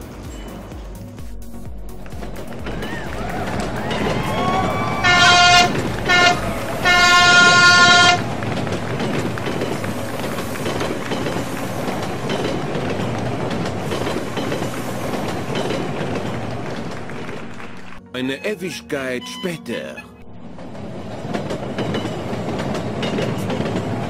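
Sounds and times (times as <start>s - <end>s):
passing train rumble and wheel clatter: 0.0s - 18.0s, 20.2s - 24.0s
train horn blasts: 3.2s - 8.8s.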